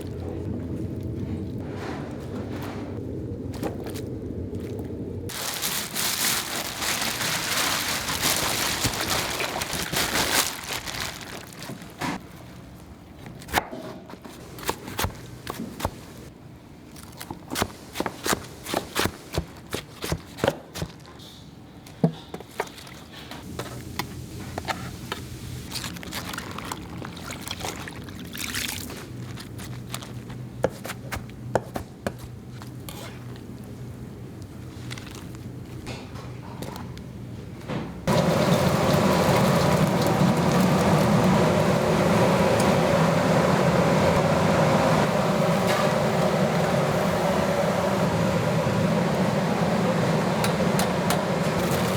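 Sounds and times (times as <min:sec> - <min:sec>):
low machine hum: 0:00.0 - 0:13.1, 0:32.3 - 0:51.9.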